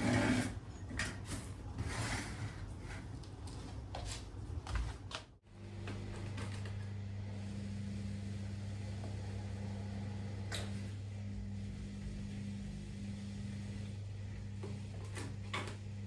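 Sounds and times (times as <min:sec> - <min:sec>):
kitchen appliance humming: 0:05.5 - 0:16.0.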